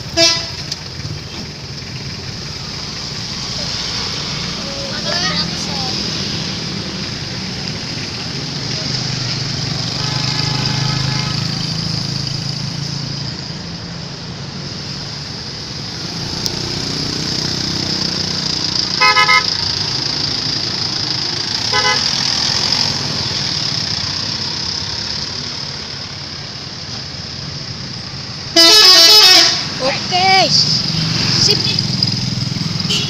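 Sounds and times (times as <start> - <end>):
road traffic: 0.0 - 33.0
vehicle horn toots: 0.1 - 0.7, 10.0 - 11.6, 19.0 - 19.6, 21.7 - 22.1, 28.6 - 29.7.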